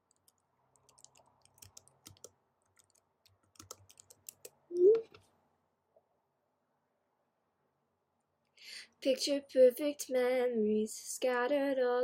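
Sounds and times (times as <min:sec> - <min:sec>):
keyboard and mouse clicks: 0:00.0 - 0:05.3.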